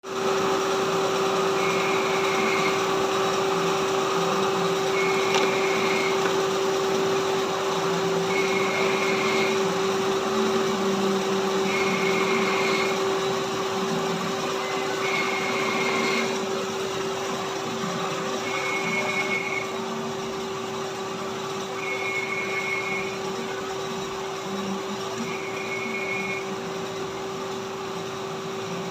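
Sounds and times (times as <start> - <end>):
lathe machinery humming: 0.0 - 28.9
high beep: 18.5 - 19.7.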